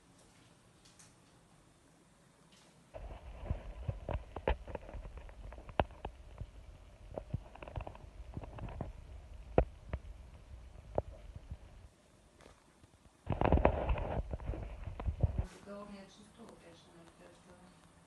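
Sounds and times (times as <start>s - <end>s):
wood fire crackling and popping: 2.9s - 15.5s
fire low rumble: 2.9s - 15.8s.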